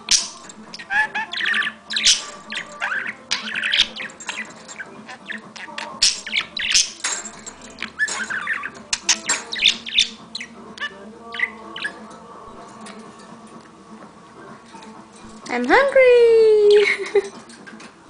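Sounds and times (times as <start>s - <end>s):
pet bird chirping: 0.0s - 12.0s.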